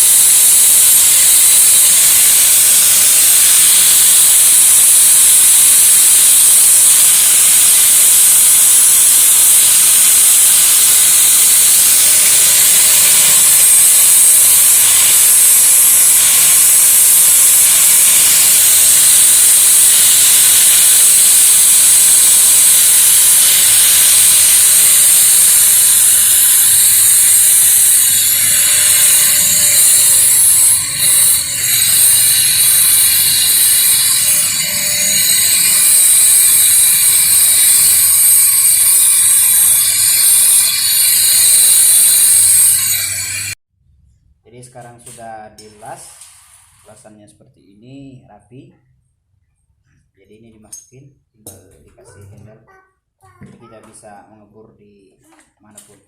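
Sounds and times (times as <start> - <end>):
welding arc hissing: 0.0 - 43.6, 45.8 - 46.9.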